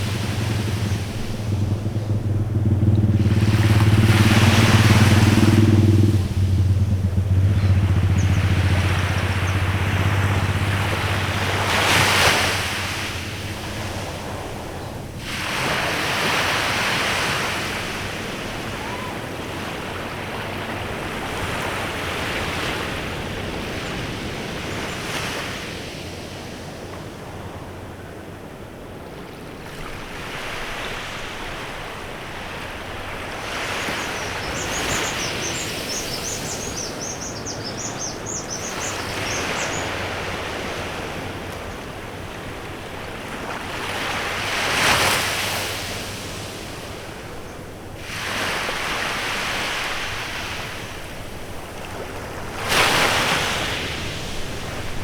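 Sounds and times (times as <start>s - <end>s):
low engine hum: 0.0s - 55.0s
small waves breaking on beach: 0.0s - 55.0s
faint bird chirps: 6.8s - 10.4s, 34.0s - 40.0s.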